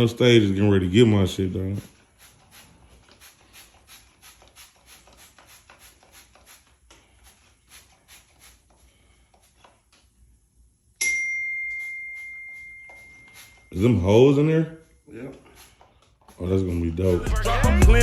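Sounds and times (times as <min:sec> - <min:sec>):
hand rubbing decals on plastic: 0:01.7 - 0:10.1, 0:11.8 - 0:14.1, 0:15.4 - 0:18.0
bright ding: 0:11.0 - 0:13.7.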